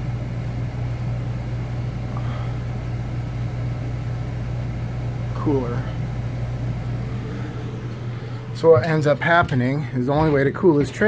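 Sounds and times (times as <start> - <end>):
air conditioner hum: 0.0 - 11.0
air rushing from vent: 5.0 - 10.7.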